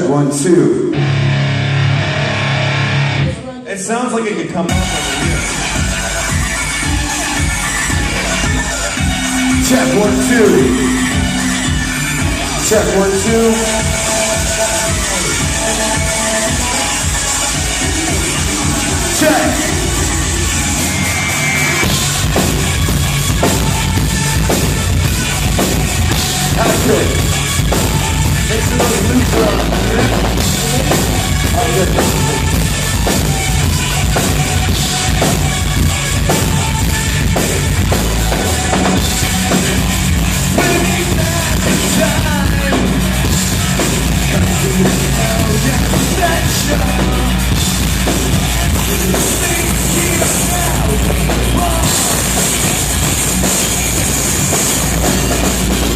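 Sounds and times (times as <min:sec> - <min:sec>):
rock band playing loud: 0:00.8 - 0:03.4, 0:04.7 - 0:55.9
drum kit: 0:04.7 - 0:55.9.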